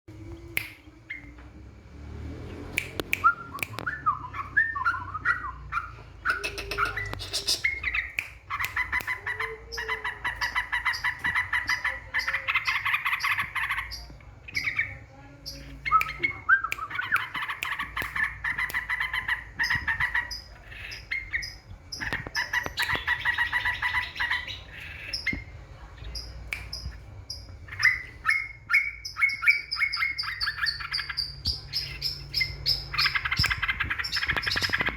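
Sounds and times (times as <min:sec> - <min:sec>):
bulbul warbling and chattering: 0:05.0 - 0:25.6.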